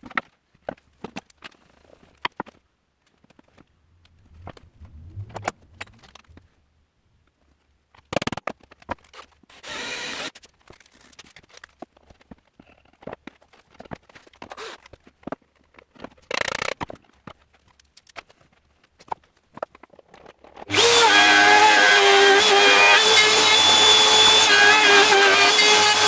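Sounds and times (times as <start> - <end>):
short rumble: 3.6 - 7.2
burst of noise: 3.8 - 6.8.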